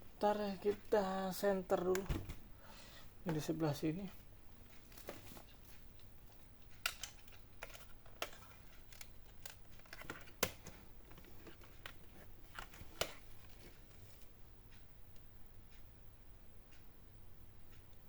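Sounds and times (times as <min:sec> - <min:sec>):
plastic laptop casing clicks: 0:06.3 - 0:13.8.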